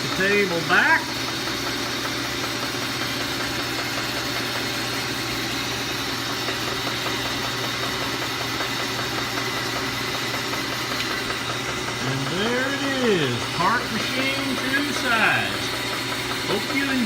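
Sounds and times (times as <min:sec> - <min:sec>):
milling machine motor humming: 0:00.0 - 0:17.0.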